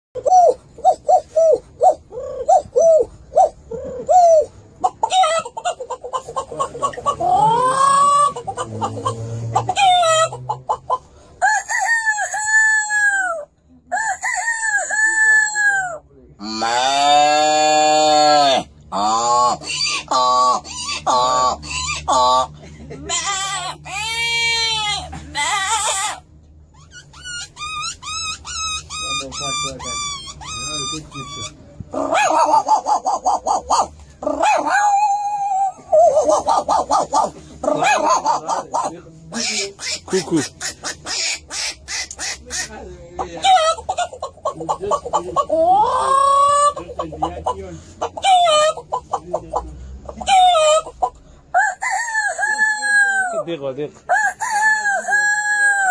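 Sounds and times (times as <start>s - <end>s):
man imitating rooster crowing: 11.4s - 20.4s, 54.1s - 55.9s.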